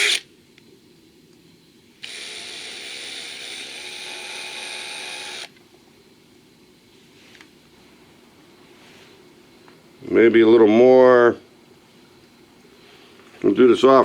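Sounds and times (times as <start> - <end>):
small power drill boring metal: 0.0 - 0.2, 2.0 - 5.5.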